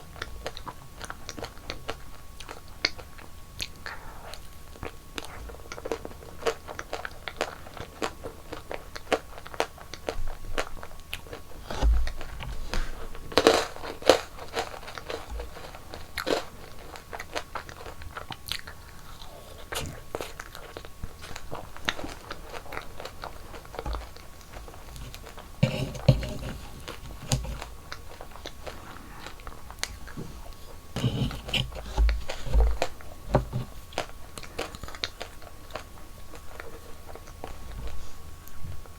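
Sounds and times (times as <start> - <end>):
crunchy bites and chewing: 5.6 - 37.3.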